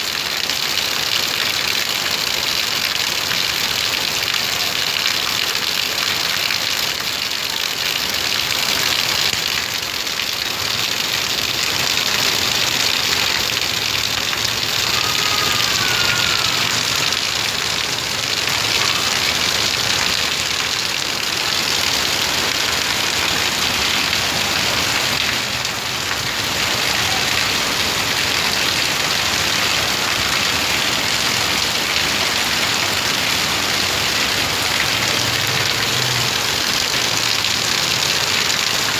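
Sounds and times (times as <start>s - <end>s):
heavy rain pouring: 0.0s - 38.9s.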